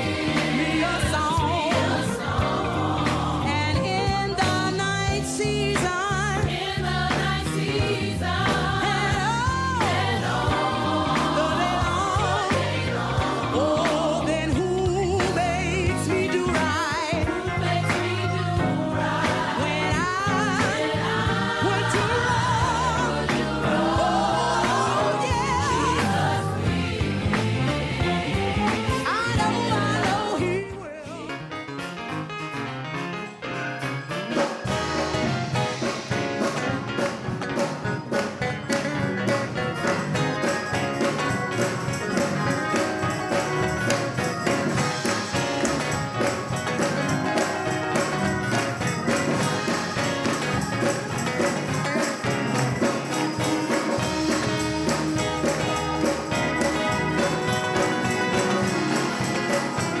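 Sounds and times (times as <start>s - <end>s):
bass: 0.0s - 60.0s
instrumental music with beat: 16.0s - 30.4s, 32.4s - 60.0s.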